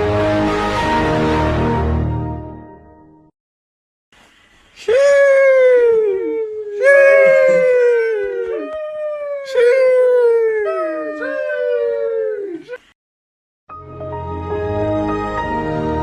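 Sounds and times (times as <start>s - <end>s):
dog howling: 5.3s - 12.8s.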